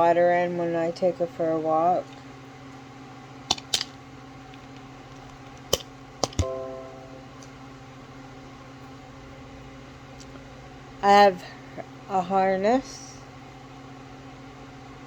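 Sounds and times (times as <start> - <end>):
objects clicking and knocking: 3.5 - 4.0, 4.6 - 6.5.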